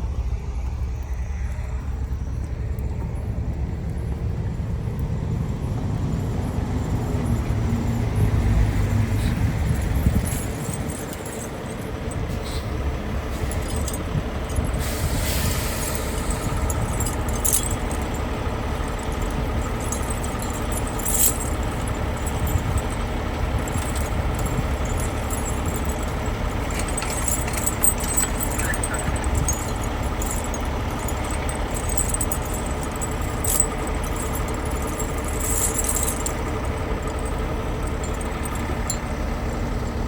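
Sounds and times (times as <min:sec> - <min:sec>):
truck engine rumbling: 0:00.0 - 0:40.0
light clicks and rattles: 0:09.2 - 0:12.8, 0:13.4 - 0:15.2, 0:15.8 - 0:40.0.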